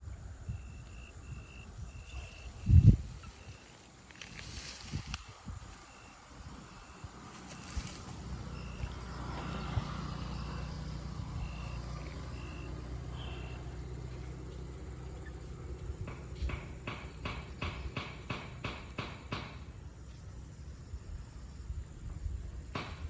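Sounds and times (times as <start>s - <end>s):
rapid chirping: 0.5s - 19.6s
vehicle engine running: 1.9s - 22.4s.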